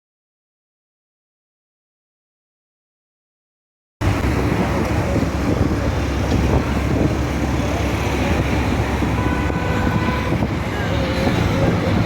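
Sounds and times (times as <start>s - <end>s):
traffic rumble: 4.0s - 12.0s
wind buffeting microphone: 4.0s - 12.0s.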